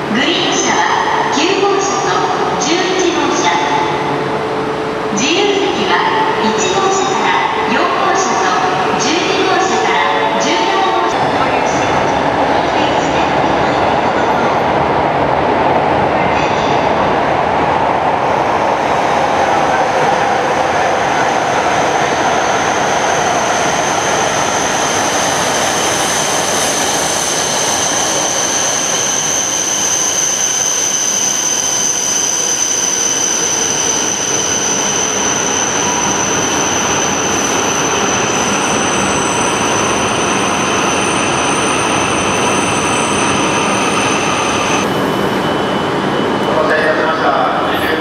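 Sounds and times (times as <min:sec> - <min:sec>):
passenger train running: 0:00.0 - 0:48.0
high-pitched whine: 0:22.2 - 0:48.0.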